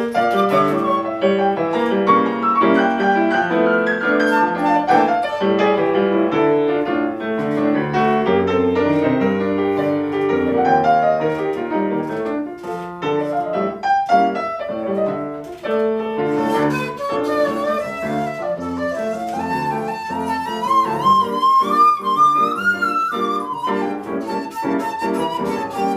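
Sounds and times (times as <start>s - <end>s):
bamboo flute melody with vibrato: 0.0s - 5.7s, 16.3s - 25.9s
piano chords: 0.0s - 25.9s.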